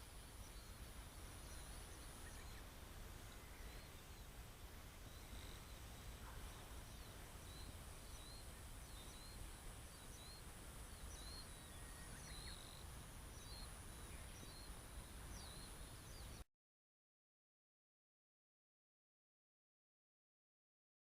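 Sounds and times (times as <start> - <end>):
steady hiss: 0.0 - 16.4
swallows chirping: 0.4 - 16.4.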